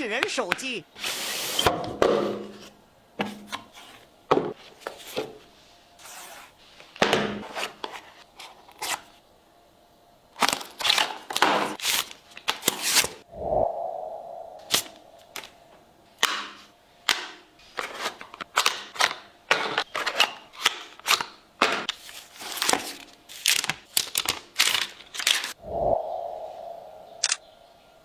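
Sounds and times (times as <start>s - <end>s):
packaging taps scrapes and rustles: 1.0s - 9.1s, 10.4s - 13.2s, 16.2s - 25.6s
brief hum: 13.3s - 15.9s, 25.6s - 28.0s.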